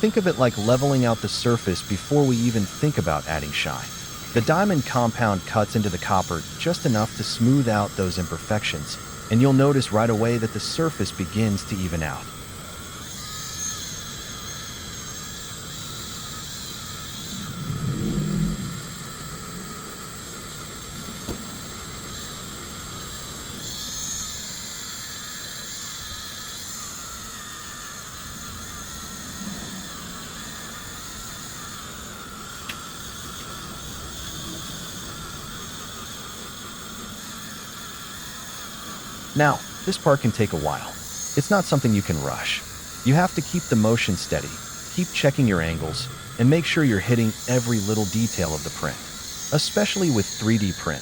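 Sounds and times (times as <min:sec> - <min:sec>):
rotary polishing tool whining: 0:00.0 - 0:51.0
low rumble: 0:17.4 - 0:19.1.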